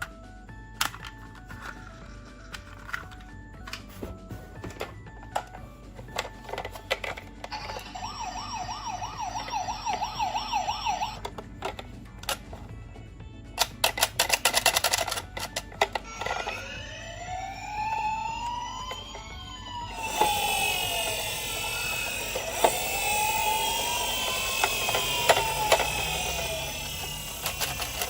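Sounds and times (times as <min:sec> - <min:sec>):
toy siren wailing: 0:07.4 - 0:11.4, 0:15.8 - 0:28.0.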